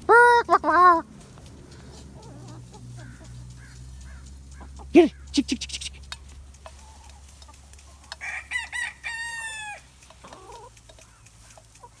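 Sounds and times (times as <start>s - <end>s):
rooster crowing: 8.1s - 9.9s.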